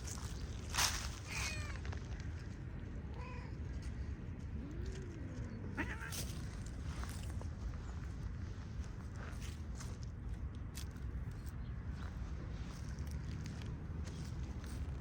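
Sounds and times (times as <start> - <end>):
cat meowing: 5.7 - 6.5.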